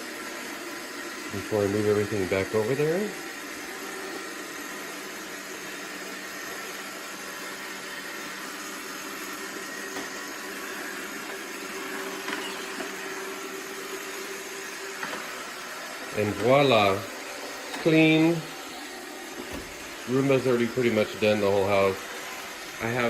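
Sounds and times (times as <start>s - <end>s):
robot vacuum whirring: 0.0s - 23.0s.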